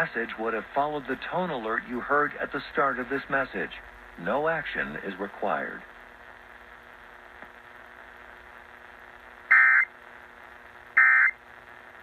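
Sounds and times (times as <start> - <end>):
radio hiss: 0.0 - 12.0
digital data tone bursts: 9.5 - 9.9, 11.0 - 11.4.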